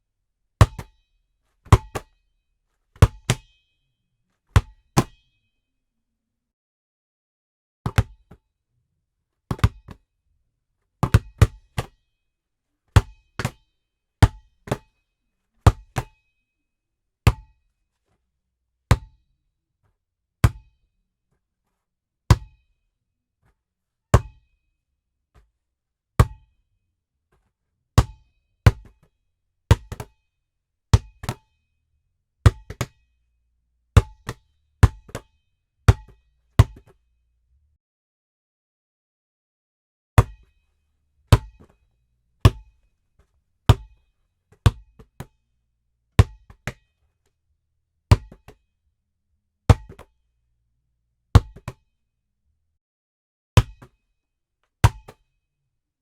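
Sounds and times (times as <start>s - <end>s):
basketball bouncing: 9.5s - 10.0s, 11.0s - 11.9s, 29.7s - 30.1s, 31.0s - 31.4s, 32.5s - 32.9s, 34.0s - 35.3s, 35.9s - 36.9s, 41.3s - 41.7s, 43.7s - 44.0s, 44.6s - 45.2s, 48.1s - 48.6s, 49.7s - 50.1s, 51.4s - 51.8s.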